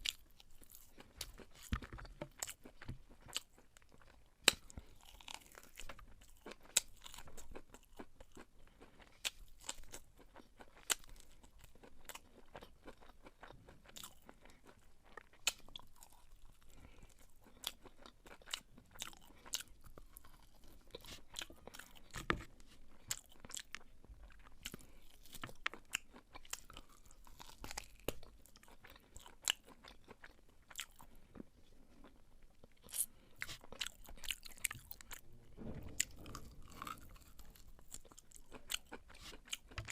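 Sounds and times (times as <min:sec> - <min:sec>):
person chewing wetly: 0:00.0 - 0:35.2, 0:36.0 - 0:39.9.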